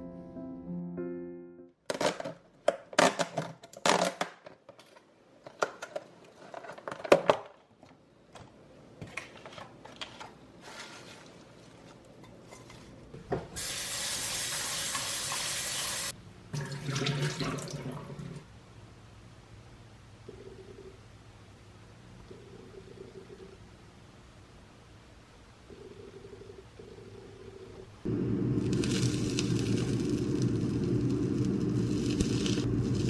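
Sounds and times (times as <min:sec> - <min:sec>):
dishes and utensils clattering: 0:12.1 - 0:13.5.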